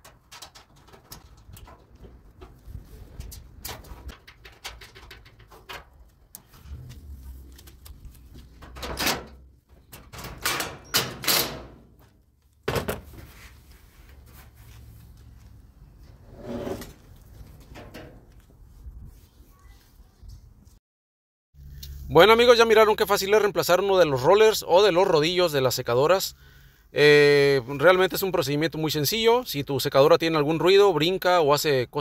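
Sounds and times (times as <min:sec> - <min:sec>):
clicks and knocks of dryer parts: 0:00.0 - 0:06.5, 0:08.5 - 0:13.2
loud scraping bursts: 0:16.2 - 0:17.0.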